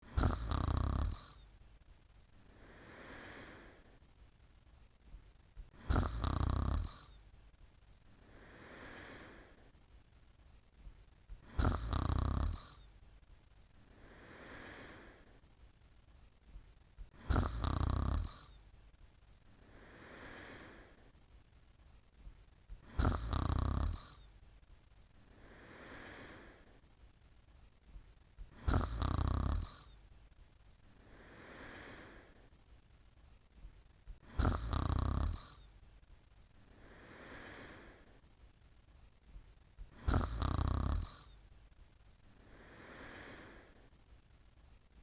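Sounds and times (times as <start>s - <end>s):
loud snoring: 0.0s - 1.5s, 2.5s - 3.9s, 5.7s - 7.2s, 8.2s - 9.6s, 11.4s - 12.9s, 13.9s - 15.2s, 17.1s - 18.6s, 19.6s - 21.0s, 22.8s - 24.3s, 25.3s - 26.6s, 28.5s - 30.0s, 31.0s - 32.4s, 34.2s - 35.7s, 36.7s - 38.1s, 39.9s - 41.4s, 42.4s - 43.8s
soft breathing out: 2.4s - 4.2s, 8.1s - 9.8s, 13.8s - 15.5s, 19.5s - 21.2s, 25.2s - 26.9s, 30.8s - 32.6s, 36.6s - 38.3s, 42.2s - 44.1s.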